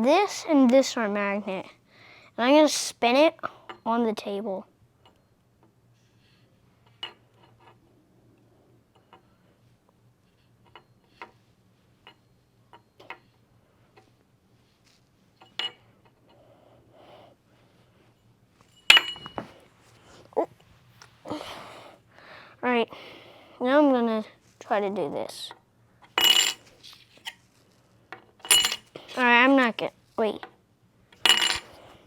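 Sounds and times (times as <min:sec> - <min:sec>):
sharp ringing clink: 0:18.7 - 0:19.4, 0:28.4 - 0:28.9.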